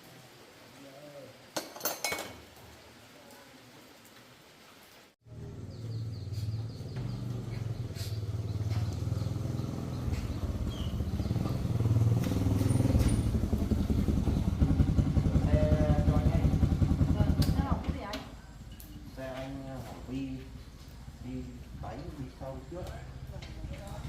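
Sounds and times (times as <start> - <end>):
motorcycle engine running: 5.3 - 18.2.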